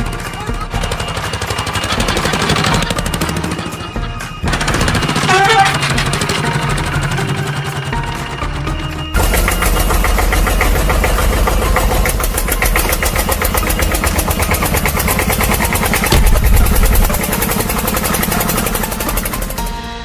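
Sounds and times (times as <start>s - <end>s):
heavy machine engine chugging: 0.0s - 20.0s
low rumble: 9.2s - 19.4s.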